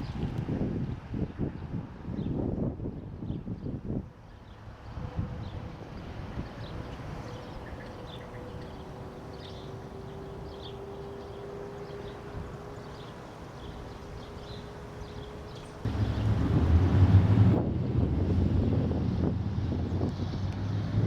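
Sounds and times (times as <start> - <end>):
low rumble: 15.9 - 21.0.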